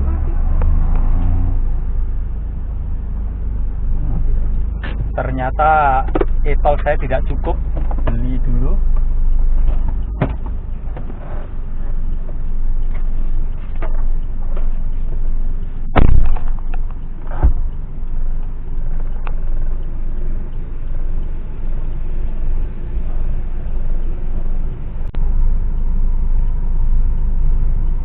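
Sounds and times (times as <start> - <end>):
car engine idling: 0.0 - 28.0
knocks and thumps: 9.0 - 11.2, 15.9 - 17.7.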